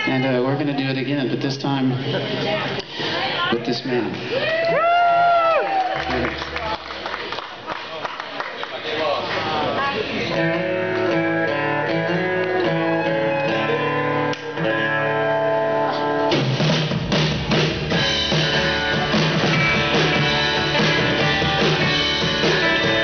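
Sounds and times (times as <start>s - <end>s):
drums: 10.1s - 23.0s
bass guitar: 10.2s - 23.0s
guitars playing: 10.2s - 23.0s.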